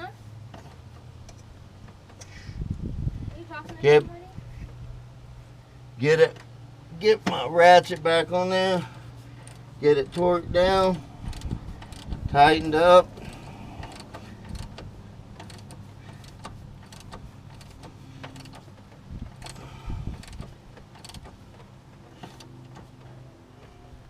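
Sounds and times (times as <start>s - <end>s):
ratchet clicking on metal: 11.2s - 22.9s.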